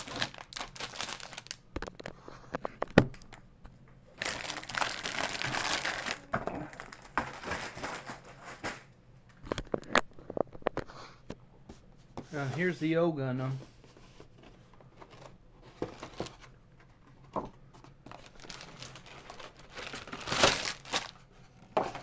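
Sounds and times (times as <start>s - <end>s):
plastic bags crinkling: 0.0s - 2.0s, 4.1s - 8.9s, 18.1s - 21.3s.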